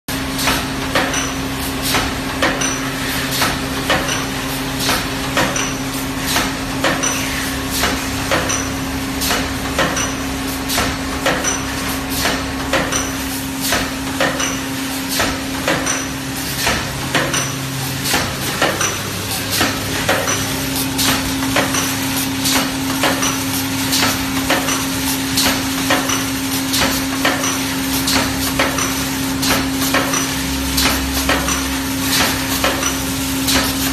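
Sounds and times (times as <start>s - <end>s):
press stamping knocks: 7.8s - 33.8s.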